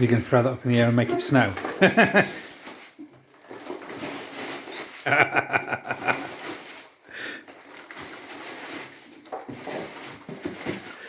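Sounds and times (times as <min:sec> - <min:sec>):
packing material rustling: 0:00.0 - 0:11.0
burst of laughter: 0:01.8 - 0:02.4, 0:05.1 - 0:06.4.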